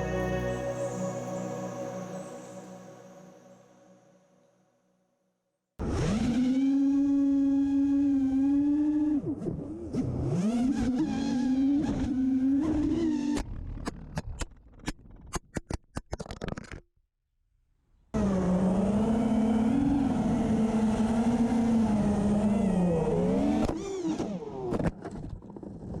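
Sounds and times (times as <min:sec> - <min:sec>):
quadcopter motors whining: 0:18.2 - 0:24.7.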